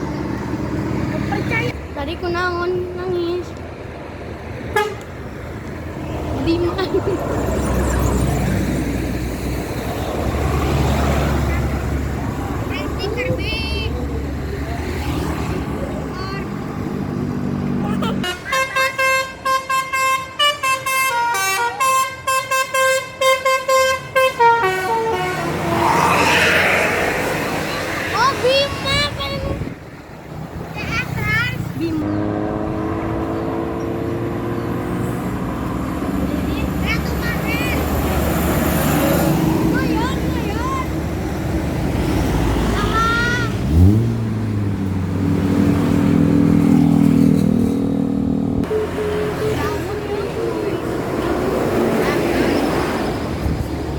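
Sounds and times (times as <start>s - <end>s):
bus horn playing a tune: 4.7s - 5.1s, 18.0s - 26.0s.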